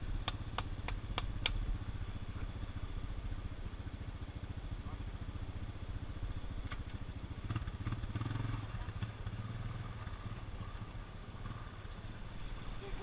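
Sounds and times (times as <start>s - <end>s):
engine idling: 0.0s - 13.0s
sharp clicks: 0.2s - 1.6s.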